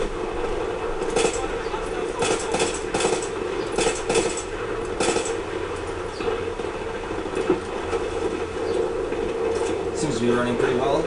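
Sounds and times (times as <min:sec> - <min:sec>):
battle ambience hum: 0:00.0 - 0:11.0
gunfire bursts: 0:01.0 - 0:05.6.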